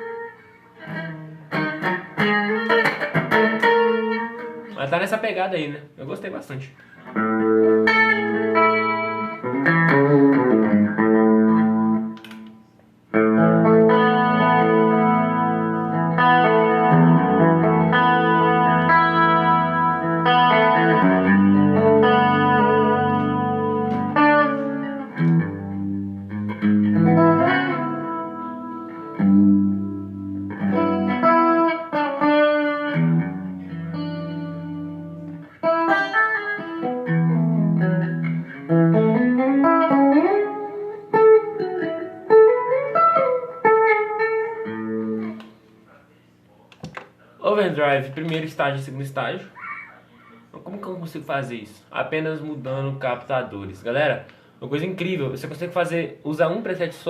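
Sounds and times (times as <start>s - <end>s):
electric guitar playing: 0.0s - 5.2s, 6.8s - 45.8s.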